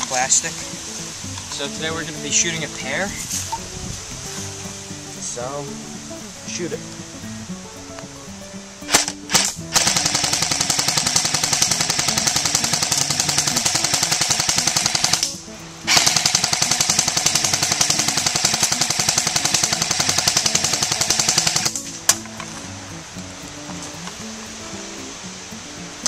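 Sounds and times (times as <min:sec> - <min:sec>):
airsoft gun firing full auto: 0:08.9 - 0:15.3, 0:15.9 - 0:21.8.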